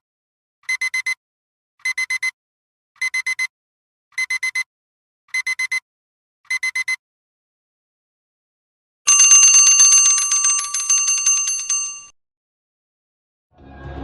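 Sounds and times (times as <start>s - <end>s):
digital alarm clock beeping: 6.5s - 7.0s, 9.1s - 12.0s.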